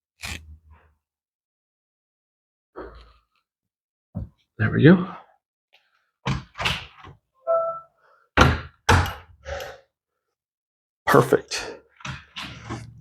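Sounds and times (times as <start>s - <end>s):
electronic lock tone: 7.4s - 7.9s
door lock bolt thunks and clacks: 8.4s - 9.3s.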